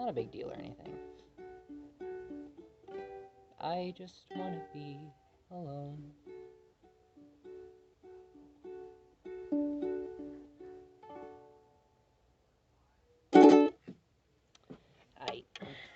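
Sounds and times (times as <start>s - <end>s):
ukulele plucked melody: 0.0s - 11.8s, 13.3s - 13.9s.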